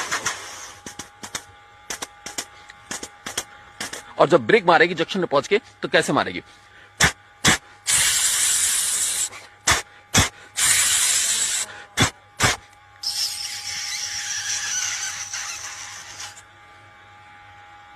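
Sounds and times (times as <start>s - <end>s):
man imitating air brake hisses: 0.0s - 0.9s, 7.0s - 16.4s.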